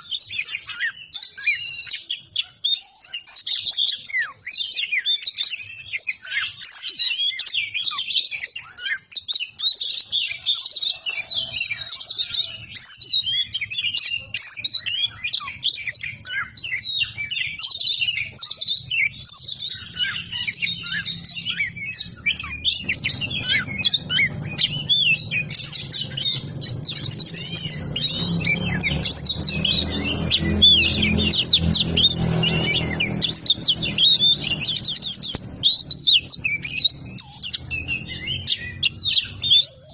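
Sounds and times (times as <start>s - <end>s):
bird chirping and whistling: 0.0s - 39.9s
low hum: 21.0s - 38.7s.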